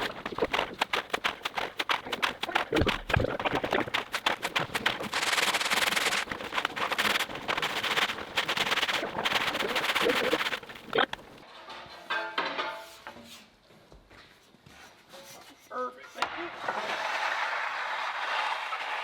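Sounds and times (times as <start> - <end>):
tools scraping wet concrete: 0.0 - 12.0, 16.6 - 19.0.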